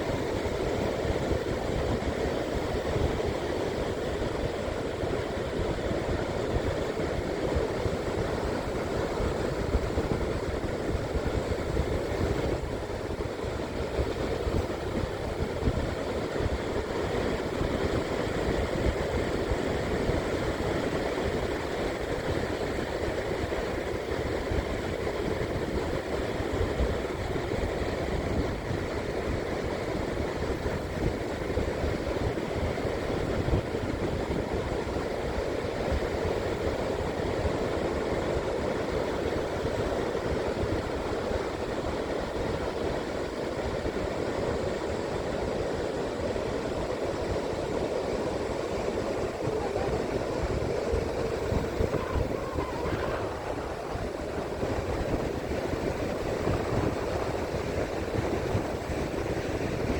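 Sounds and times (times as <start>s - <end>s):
wind rumbling on microphone: 0.0s - 44.6s, 46.2s - 59.9s
rough ocean surf roaring: 47.8s - 59.9s.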